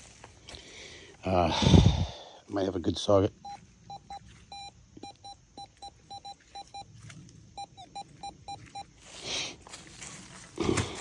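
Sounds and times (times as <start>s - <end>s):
metal detector beeps: 3.4s - 9.0s
short rustle: 9.0s - 11.0s.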